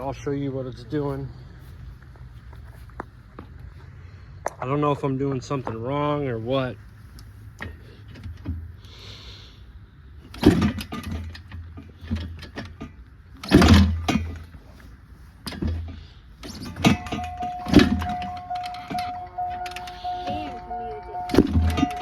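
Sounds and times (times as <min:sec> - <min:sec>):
dirt bike kickstart thuds: 0:10.3 - 0:14.7
steady musical tone: 0:16.8 - 0:22.0.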